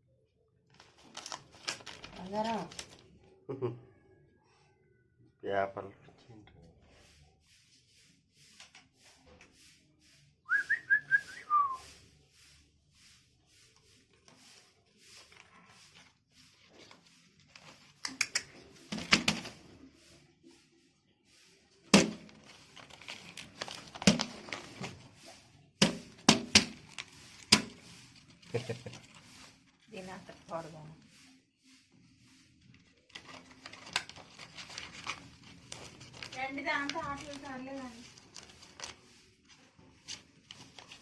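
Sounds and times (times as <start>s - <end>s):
high whistled notes: 10.5s - 11.9s.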